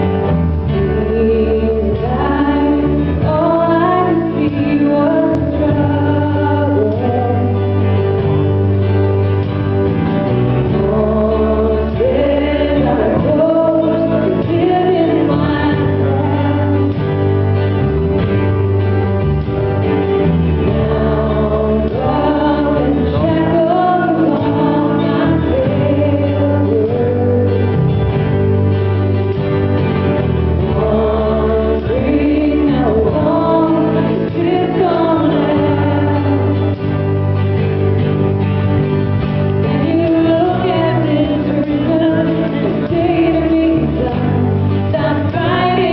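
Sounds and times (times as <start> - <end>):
choir singing: 10.7 - 17.1, 20.6 - 27.7, 30.6 - 36.9, 39.7 - 45.9.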